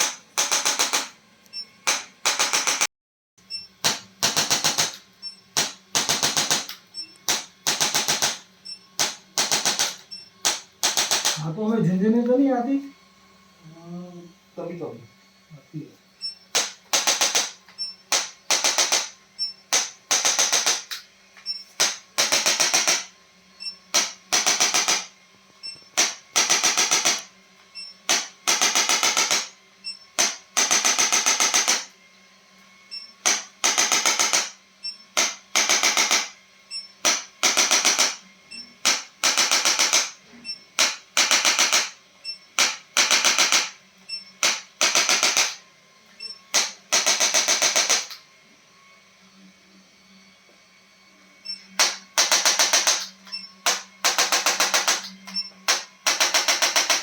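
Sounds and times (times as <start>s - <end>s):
electric device rapid tapping: 0.0s - 1.2s, 1.8s - 2.9s, 3.5s - 11.6s, 16.2s - 21.0s, 21.7s - 31.9s, 33.2s - 36.4s, 37.0s - 45.6s, 46.5s - 48.2s, 51.6s - 57.0s.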